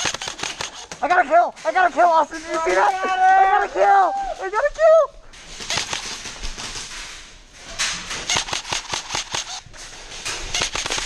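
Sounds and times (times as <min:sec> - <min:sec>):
airsoft gunshots snapping: 0:08.4 - 0:09.5.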